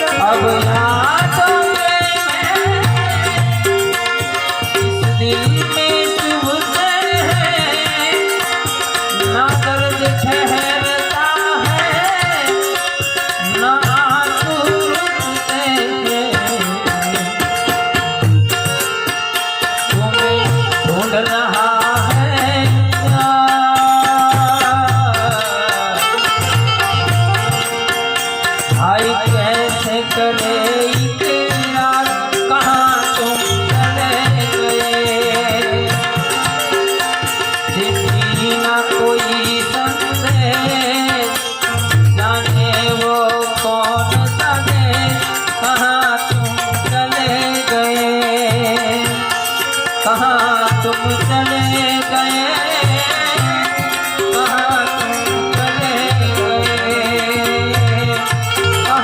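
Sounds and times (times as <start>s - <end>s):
harmonium melody: 0.0s - 59.0s.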